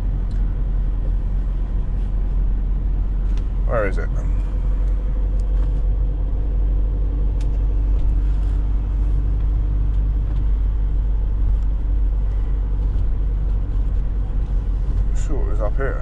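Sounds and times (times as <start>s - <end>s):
faint engine hum: 0.0s - 16.0s
van road rumble: 0.0s - 16.0s.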